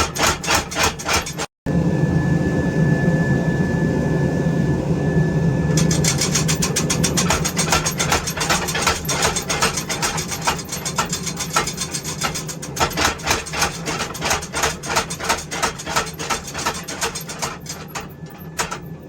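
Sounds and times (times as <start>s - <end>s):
power hammer pounding metal: 0.0s - 1.5s, 5.7s - 19.0s
steady motor hum: 4.1s - 19.0s.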